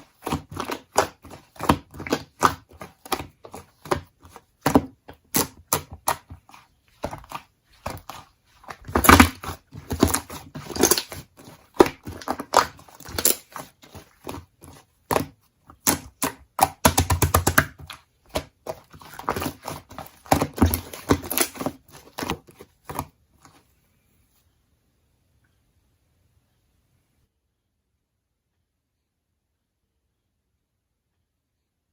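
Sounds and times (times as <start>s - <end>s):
slime squished by hand: 0.0s - 23.0s.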